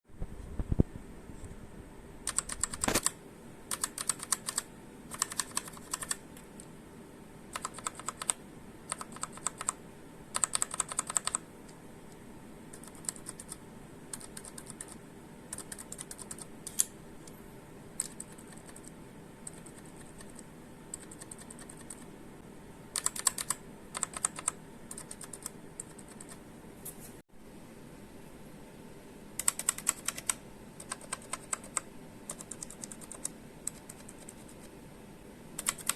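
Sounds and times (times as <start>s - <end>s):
mechanical keyboard key clicks: 2.3s - 6.2s, 7.5s - 9.8s, 10.4s - 11.4s, 23.0s - 26.4s, 29.4s - 34.4s, 35.6s - 35.9s.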